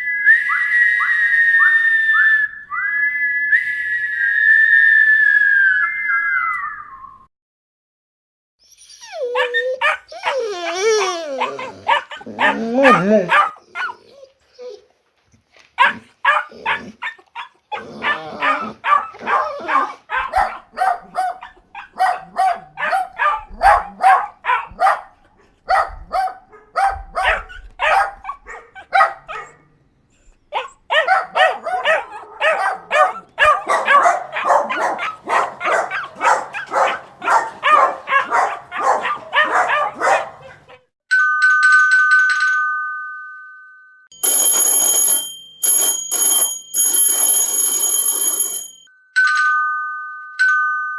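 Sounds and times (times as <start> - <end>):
dogs barking: 9.1 - 14.2, 15.8 - 29.7, 30.5 - 40.9
bell ringing: 41.1 - 50.9
two-tone chime: 41.1 - 50.9.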